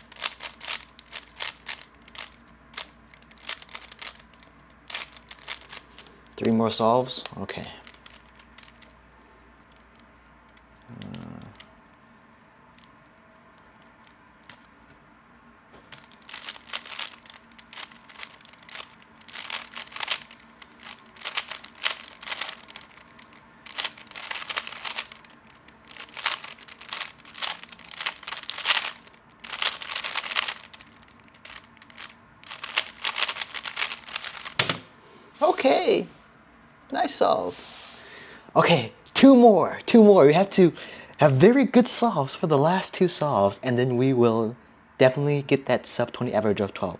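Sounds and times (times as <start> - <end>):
puzzle cube plastic clicking: 0.0 - 6.6, 7.2 - 9.0, 9.6 - 11.7, 15.9 - 34.9.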